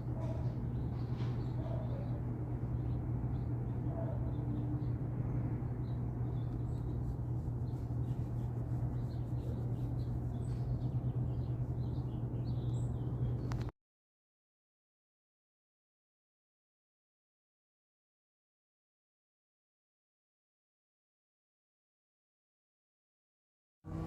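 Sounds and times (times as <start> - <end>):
low motor hum: 0.0 - 13.7
faint bird chirps: 5.8 - 13.7.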